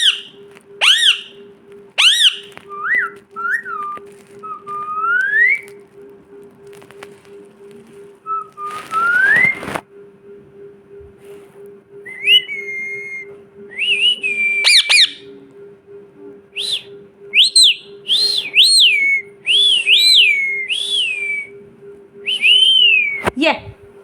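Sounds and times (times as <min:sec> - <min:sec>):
parrot whistling: 0:00.0 - 0:01.4, 0:02.0 - 0:05.8, 0:08.2 - 0:09.7, 0:12.1 - 0:15.3, 0:16.6 - 0:21.5, 0:22.2 - 0:23.3.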